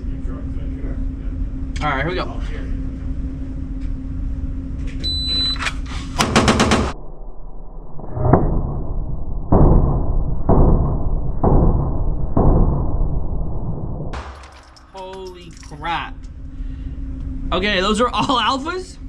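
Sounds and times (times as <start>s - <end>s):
pistol firing rapidly: 6.2s - 7.0s
slowed deep dull booms: 6.2s - 14.4s.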